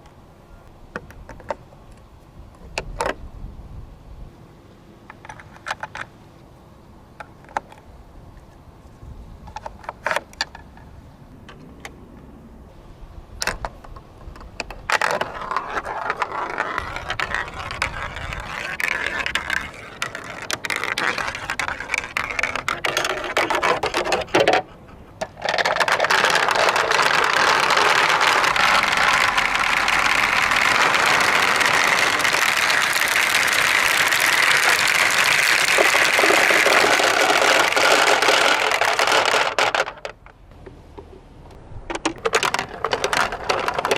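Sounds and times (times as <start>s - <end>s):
marbles clattering down plastic slide: 14.6s - 24.6s, 25.2s - 40.2s, 41.9s - 43.9s
water rushing down slide: 27.1s - 38.0s.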